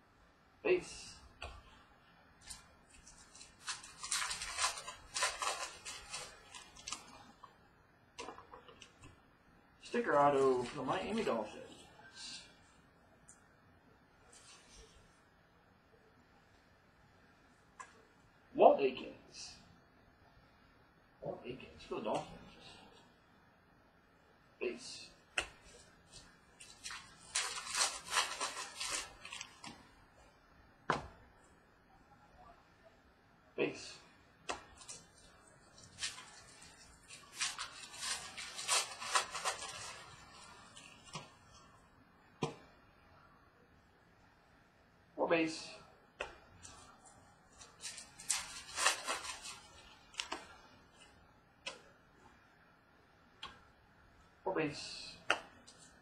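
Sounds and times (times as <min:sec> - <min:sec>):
trading cards rustling and sliding: 0:02.4 - 0:07.2, 0:25.6 - 0:29.8, 0:34.5 - 0:41.6, 0:46.6 - 0:50.6.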